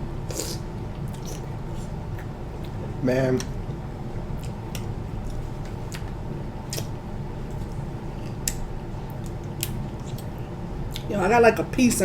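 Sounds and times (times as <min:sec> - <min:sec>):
chewing and wet smacks: 0:00.4 - 0:01.5, 0:02.1 - 0:02.8, 0:04.3 - 0:11.1.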